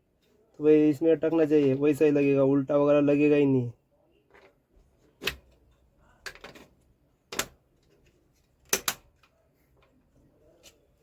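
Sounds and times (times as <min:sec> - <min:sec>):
plastic parts clicking into place: 0:06.2 - 0:09.9.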